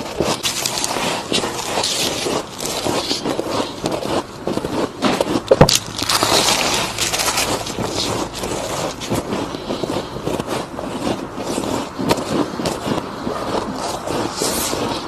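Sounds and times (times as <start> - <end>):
chewing ice crunches: 0.0 - 15.0.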